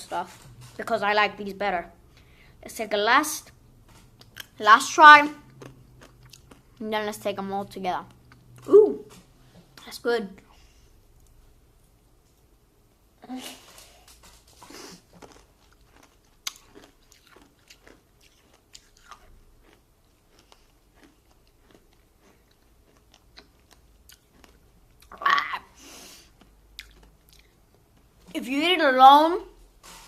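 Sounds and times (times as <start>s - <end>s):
chewing and crunching candy: 3.3s - 7.2s, 13.6s - 25.6s, 26.2s - 28.1s
mouth sound: 8.6s - 9.2s.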